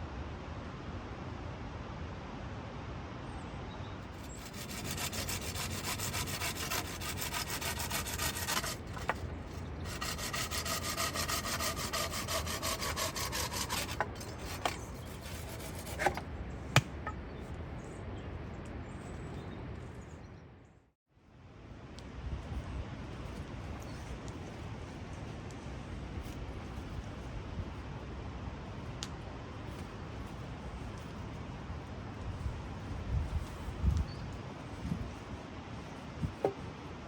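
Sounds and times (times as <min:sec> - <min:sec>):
saw cutting wood: 0:04.2 - 0:16.2.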